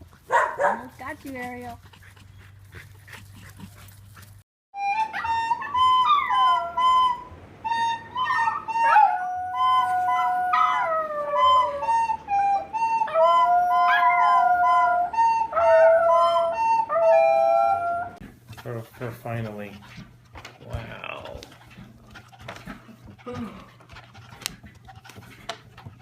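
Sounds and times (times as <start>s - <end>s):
wind instrument held notes: 4.8s - 18.2s
dog howling: 8.0s - 18.2s.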